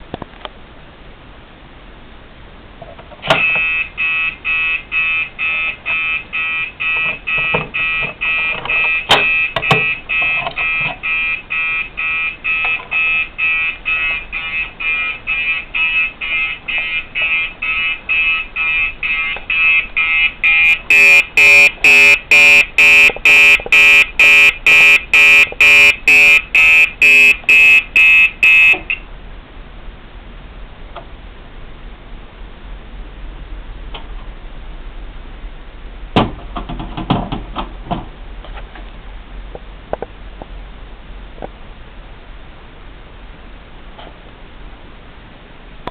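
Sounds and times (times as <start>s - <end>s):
fire alarm horn pulsing: 3.4s - 29.0s.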